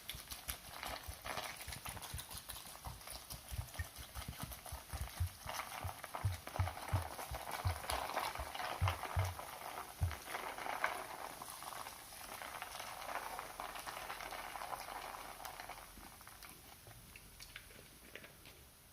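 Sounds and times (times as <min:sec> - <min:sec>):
soda fizzing over ice: 0:00.0 - 0:18.1
ice cubes knocking: 0:04.5 - 0:11.3.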